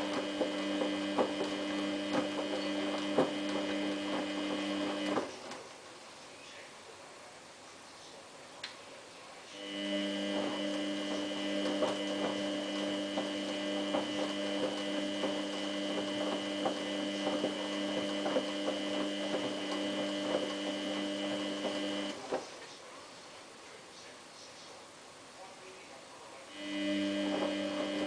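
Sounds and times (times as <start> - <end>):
washing machine humming: 0.0 - 6.2, 9.4 - 25.3, 26.0 - 28.0.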